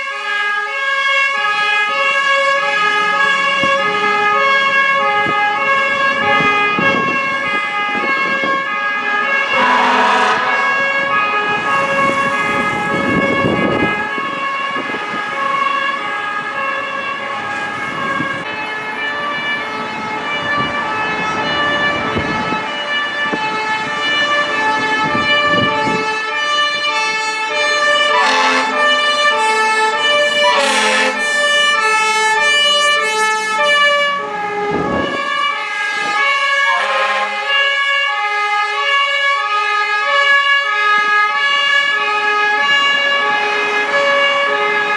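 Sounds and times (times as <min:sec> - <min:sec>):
fire engine two-tone sirens: 0:00.0 - 0:44.9
truck engines rumbling: 0:01.1 - 0:44.9
short horn blasts: 0:09.5 - 0:12.7, 0:28.2 - 0:29.8, 0:30.4 - 0:31.4.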